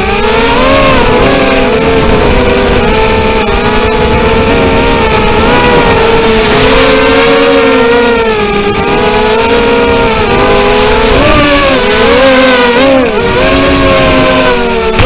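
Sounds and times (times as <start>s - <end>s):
drone motors whining: 0.0s - 15.0s
rumble of air noise: 0.0s - 15.0s
thin steady high tone: 0.0s - 15.0s.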